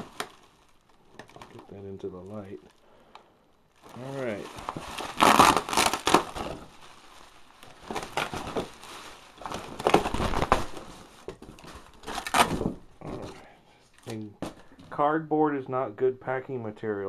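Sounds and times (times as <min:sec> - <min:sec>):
cardboard crumpling: 0:00.0 - 0:02.7, 0:03.8 - 0:14.7.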